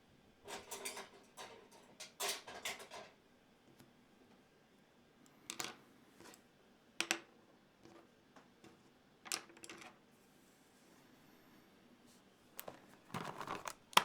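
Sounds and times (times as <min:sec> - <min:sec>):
plastic parts clicking and clattering: 0:00.5 - 0:03.2, 0:12.6 - 0:14.0.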